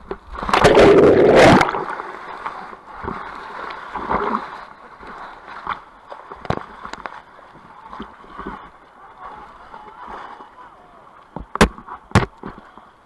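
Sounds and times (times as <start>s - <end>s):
river water sloshing and gurgling: 0.0s - 12.8s
water splashing loudly: 0.4s - 2.3s.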